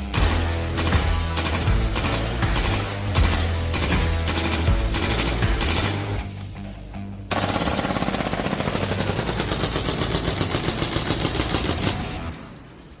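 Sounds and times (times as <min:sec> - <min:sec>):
airsoft gun full-auto burst: 0:00.0 - 0:06.2, 0:07.3 - 0:12.2.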